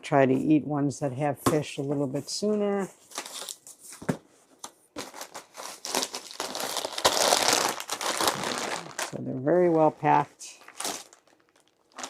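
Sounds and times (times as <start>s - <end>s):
packaging crinkling: 5.0s - 9.9s, 10.5s - 12.0s.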